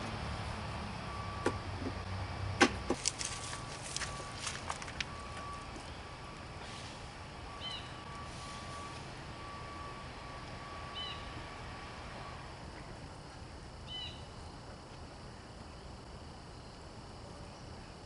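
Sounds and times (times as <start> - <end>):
faint outdoor background noise: 0.0 - 18.0
bird chirping: 7.6 - 8.0, 10.9 - 11.4, 13.9 - 14.3.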